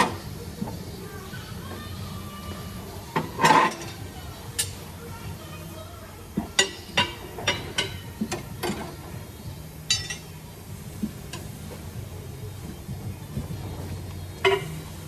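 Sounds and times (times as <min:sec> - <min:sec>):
steady low hum: 0:00.0 - 0:15.0
metal tools clinking: 0:09.9 - 0:10.3.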